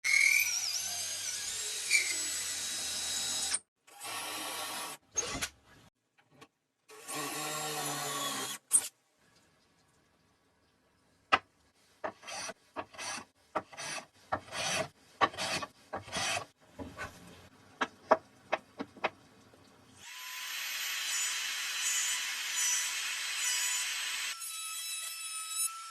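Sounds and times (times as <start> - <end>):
scraping strokes on wood: 12.0 - 17.2.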